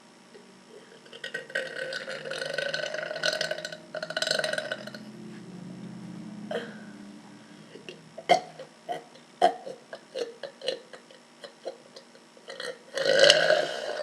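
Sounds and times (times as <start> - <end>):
belch-like release: 1.0 - 5.0
girl's throat air sounds: 6.5 - 9.9.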